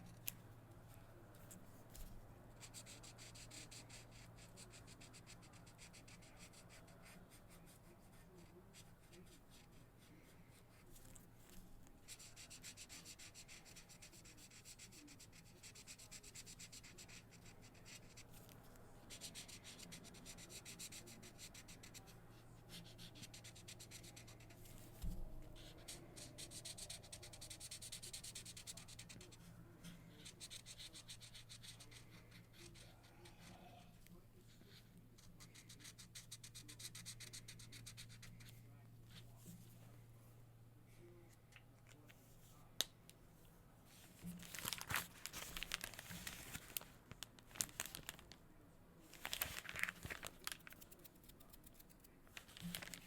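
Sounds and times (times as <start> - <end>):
faint low hum: 0.0 - 53.0
markers scratching on paper: 2.6 - 9.8, 19.1 - 22.0, 30.2 - 33.8.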